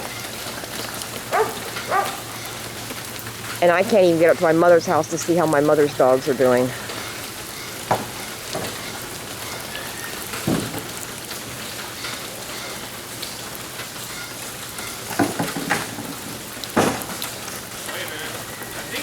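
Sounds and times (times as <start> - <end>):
rain falling on wet ground: 0.0 - 19.0.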